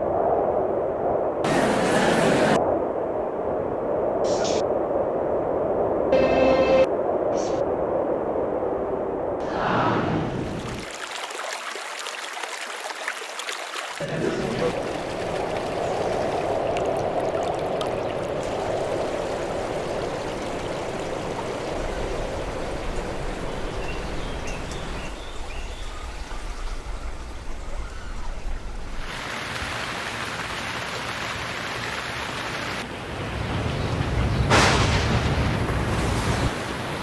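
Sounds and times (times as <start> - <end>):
running water rushing: 10.4 - 33.6.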